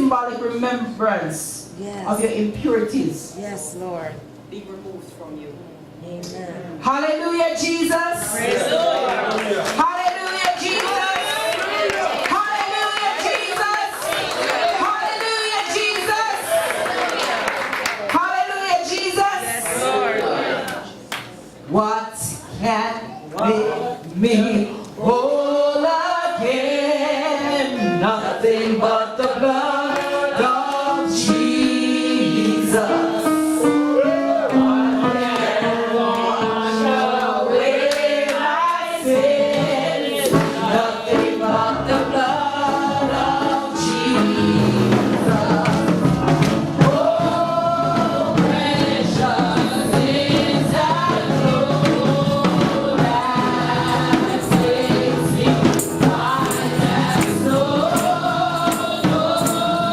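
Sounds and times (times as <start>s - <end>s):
choir singing gospel: 6.9s - 21.1s, 23.4s - 59.9s
instrumental accompaniment with beat: 29.2s - 59.9s.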